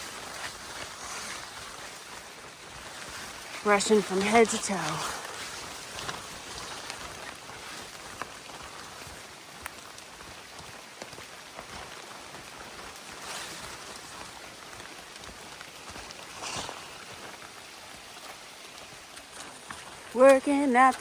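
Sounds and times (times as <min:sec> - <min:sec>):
rain pattering: 0:00.0 - 0:21.0
wet brush swishing: 0:03.0 - 0:07.4.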